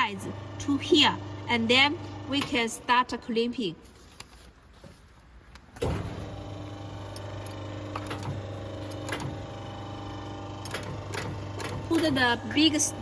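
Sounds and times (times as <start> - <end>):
machine motor humming: 0.1 - 2.8, 5.8 - 13.0.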